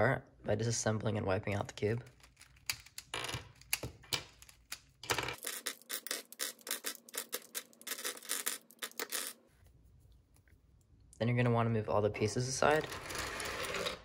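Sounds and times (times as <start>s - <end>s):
plastic cube pieces clicking: 2.1s - 9.4s.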